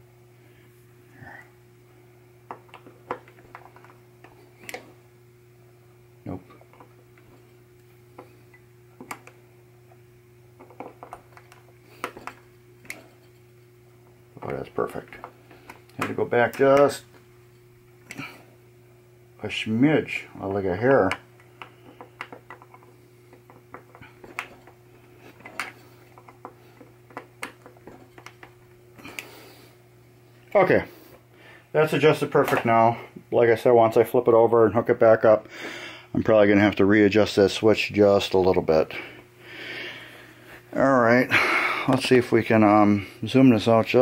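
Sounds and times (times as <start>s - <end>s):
steady low hum: 0.0s - 44.0s
clicks and taps of tools: 21.1s - 24.8s.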